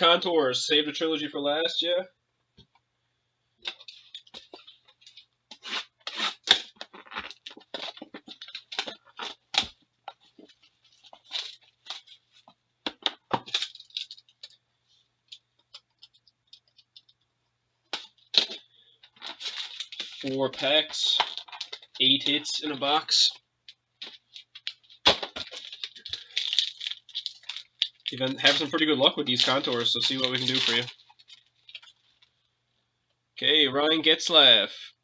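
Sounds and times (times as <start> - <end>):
plastic wrap crinkling and tearing: 3.6 - 12.4, 13.4 - 14.6, 17.9 - 23.3, 24.0 - 32.4.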